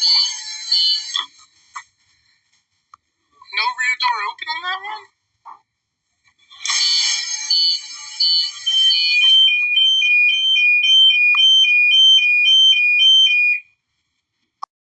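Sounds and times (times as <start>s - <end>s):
harsh alarm tone: 6.7s - 13.6s
alternating high and low beeps: 7.0s - 13.6s.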